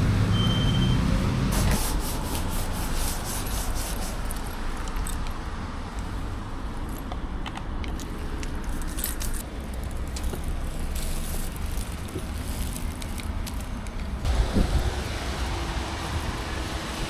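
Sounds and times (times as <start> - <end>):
electric scooter ride rumble: 0.0 - 17.0
light clicks and rattles: 6.8 - 14.2.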